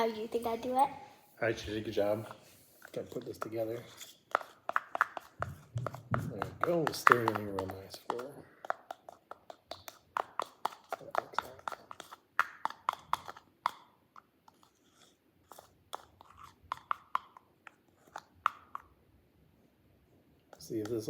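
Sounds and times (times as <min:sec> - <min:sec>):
utensil clicking against bowl: 0:04.3 - 0:13.8.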